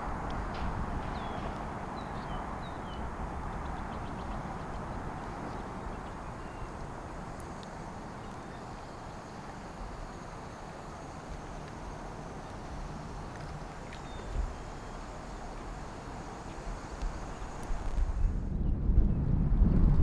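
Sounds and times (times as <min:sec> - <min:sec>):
river water rushing: 0:00.0 - 0:18.0
bird chirps: 0:01.1 - 0:06.8.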